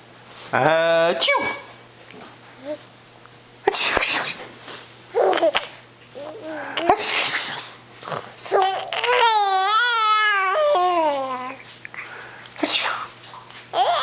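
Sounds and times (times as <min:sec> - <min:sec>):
person sneezing: 0:03.7 - 0:04.4, 0:12.6 - 0:13.1
baby laughing and babbling: 0:05.1 - 0:07.3, 0:08.4 - 0:11.6, 0:13.7 - 0:14.0.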